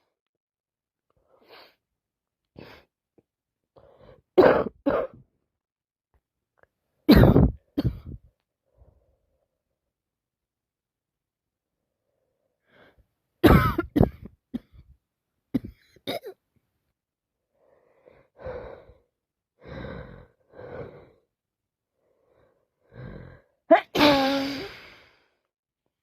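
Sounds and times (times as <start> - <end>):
person coughing: 4.4 - 5.2, 7.1 - 8.2, 13.4 - 14.8, 15.6 - 16.4, 23.8 - 24.7
soft breathy coughs: 4.4 - 5.2, 7.1 - 8.3, 13.4 - 14.9, 15.6 - 16.4.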